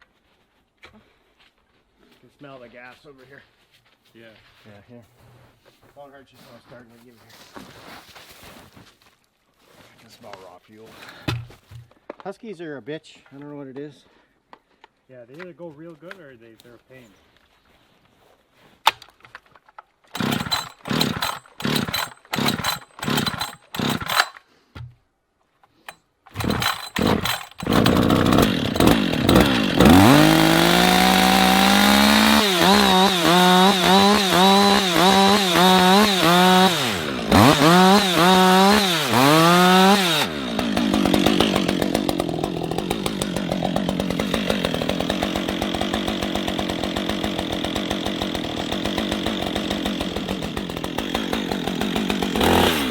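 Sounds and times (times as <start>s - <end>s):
chainsaw engine revving: 20.1s - 24.4s, 26.3s - 52.9s
chainsaw rope pulls: 20.1s - 24.5s, 25.7s - 52.9s.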